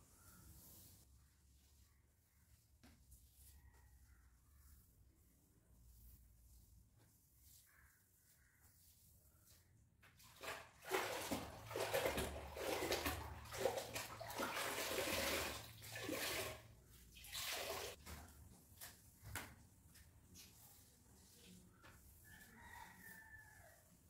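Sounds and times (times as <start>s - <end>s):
water sloshing and splashing: 10.2s - 18.1s.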